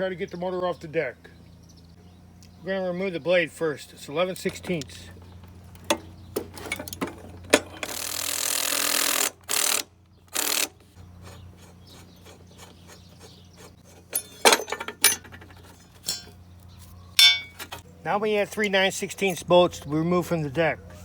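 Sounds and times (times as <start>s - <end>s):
ratchet wrench clicking and rasping: 7.8s - 10.8s.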